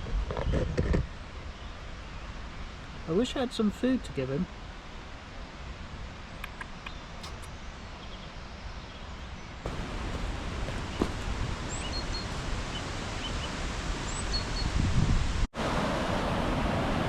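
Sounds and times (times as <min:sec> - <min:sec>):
rushing river water: 0:09.6 - 0:17.0.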